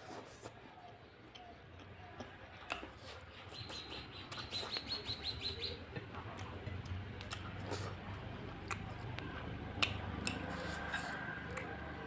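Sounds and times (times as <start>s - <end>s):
small bird chirping: 3.3s - 5.8s.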